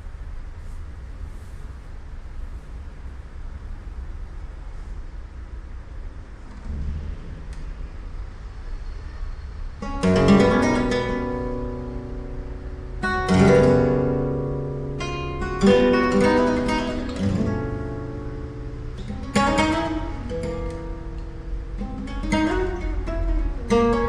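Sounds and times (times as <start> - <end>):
flamenco guitar strumming: 9.8 - 24.0.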